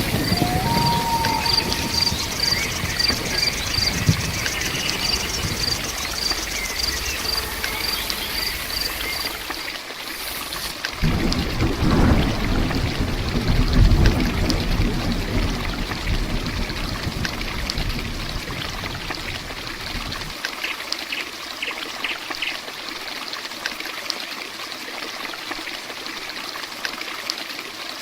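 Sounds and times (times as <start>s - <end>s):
insect chirping: 0.0s - 10.8s
heavy rush of water: 0.0s - 28.0s
rain falling: 0.0s - 28.0s.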